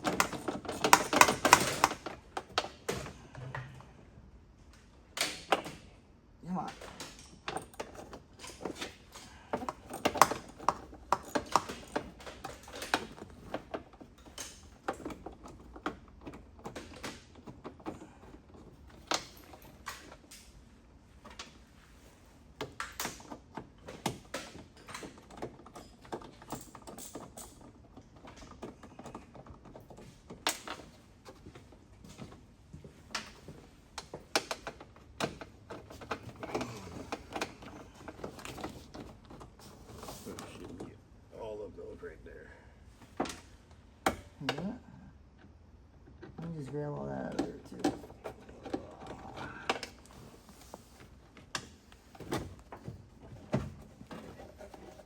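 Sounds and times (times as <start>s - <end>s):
hand tools clicking and tapping: 0.0s - 3.7s, 6.6s - 20.5s.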